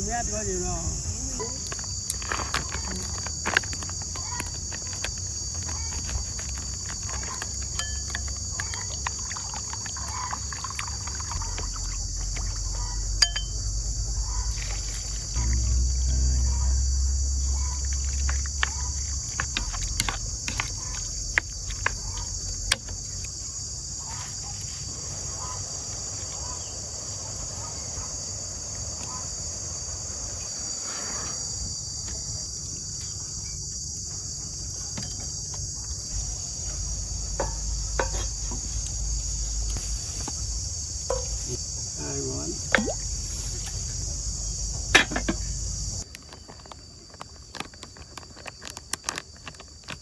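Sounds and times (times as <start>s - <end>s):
insects chorus: 0.0s - 50.0s.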